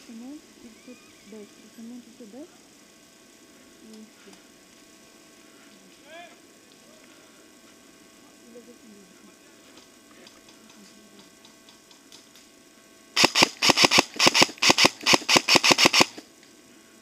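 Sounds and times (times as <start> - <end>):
airsoft gun firing: 13.2 - 16.2.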